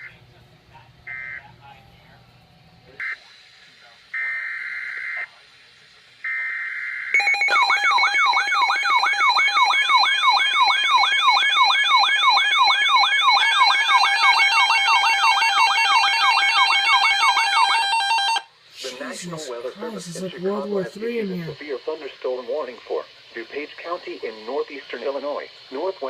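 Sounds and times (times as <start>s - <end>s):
warbling alarm siren tone: 6.3s - 18.5s.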